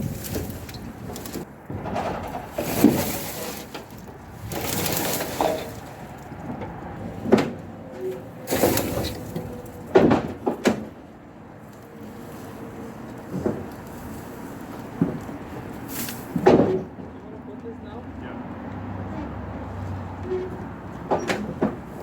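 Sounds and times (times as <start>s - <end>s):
heavy objects knocking and thudding: 0.0s - 7.6s, 8.5s - 11.0s, 15.0s - 15.4s, 16.2s - 17.1s.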